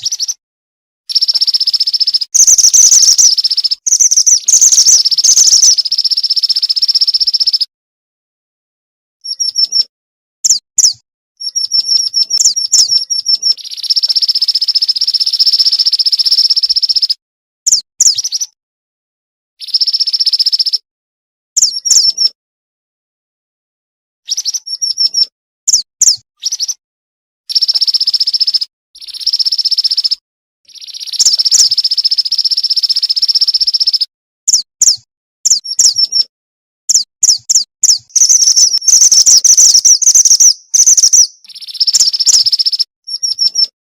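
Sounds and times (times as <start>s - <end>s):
bird chips and buzzing trills: 1.1s - 7.7s, 10.5s - 17.1s, 27.5s - 36.3s, 36.9s - 43.7s.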